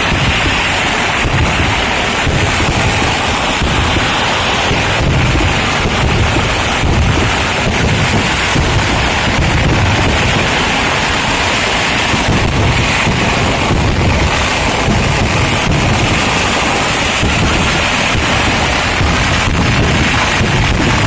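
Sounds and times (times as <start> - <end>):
firecrackers exploding in a rumble: 0.0 - 21.0.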